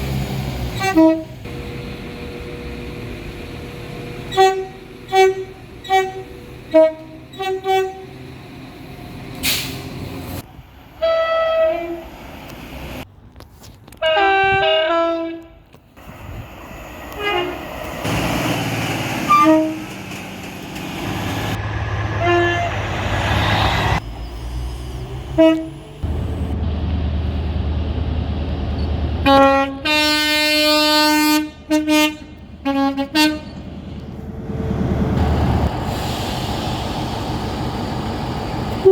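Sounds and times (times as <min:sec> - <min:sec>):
low rumble of engines and rails: 0:00.0 - 0:38.9
train horn blasts: 0:00.8 - 0:01.4, 0:04.2 - 0:08.1, 0:11.0 - 0:12.0, 0:14.0 - 0:15.6, 0:17.1 - 0:17.6, 0:19.2 - 0:20.0, 0:22.1 - 0:23.0, 0:25.3 - 0:25.8, 0:29.2 - 0:33.6.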